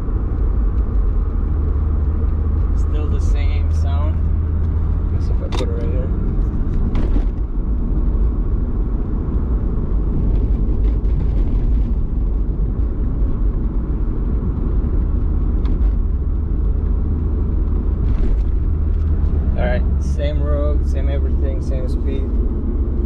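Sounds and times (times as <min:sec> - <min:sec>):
road and tyre rumble in car: 0:00.0 - 0:23.0.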